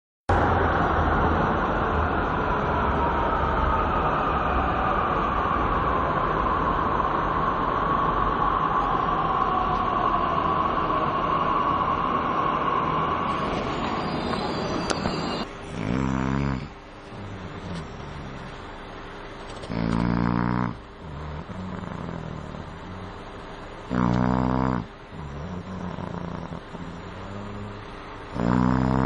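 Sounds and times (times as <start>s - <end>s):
metro train rumble and hiss: 0.3s - 15.8s
train motor whine: 8.5s - 29.0s.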